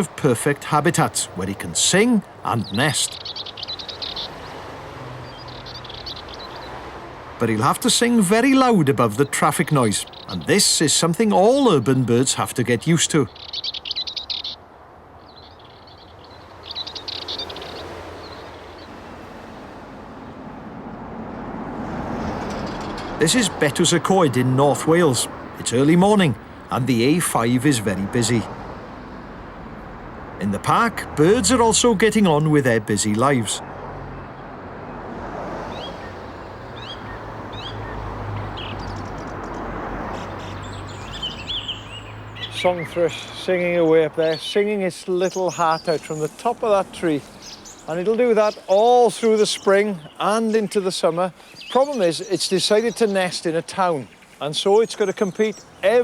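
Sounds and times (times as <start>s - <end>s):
bird warbling: 0.0s - 4.6s, 5.2s - 6.8s, 7.4s - 18.9s, 35.7s - 50.7s
road traffic hiss: 0.0s - 56.0s
thrush singing: 22.0s - 34.3s, 35.7s - 51.0s.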